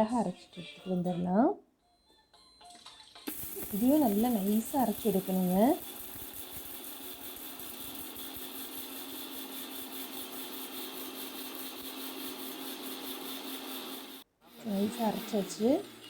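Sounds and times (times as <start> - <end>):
mixer grinder motor hum: 3.3 - 16.0.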